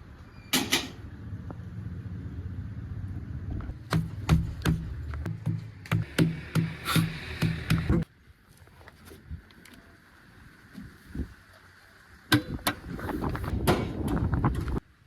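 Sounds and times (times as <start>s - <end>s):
diesel engine running: 1.0s - 8.0s.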